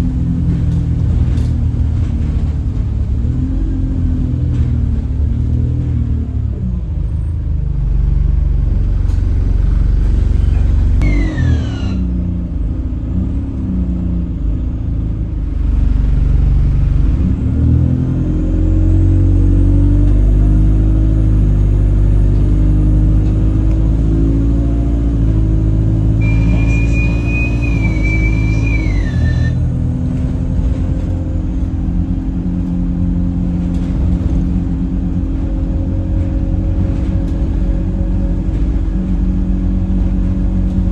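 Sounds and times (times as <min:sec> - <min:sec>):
bus drivetrain running: 0:00.0 - 0:40.9
falling whistle: 0:11.0 - 0:12.1, 0:26.2 - 0:29.7.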